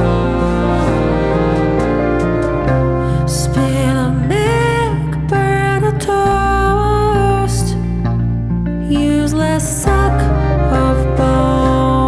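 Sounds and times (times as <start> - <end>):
live band playing: 0.0 - 5.1, 9.9 - 12.0.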